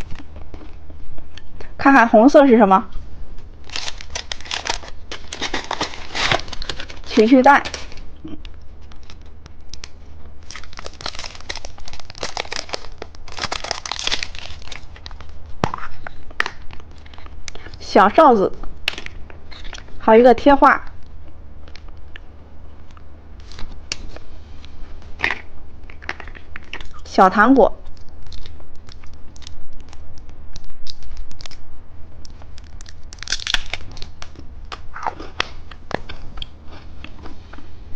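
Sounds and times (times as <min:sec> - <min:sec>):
plastic packaging crinkling: 0:03.6 - 0:08.2, 0:08.8 - 0:17.8, 0:27.8 - 0:31.6, 0:32.2 - 0:36.4.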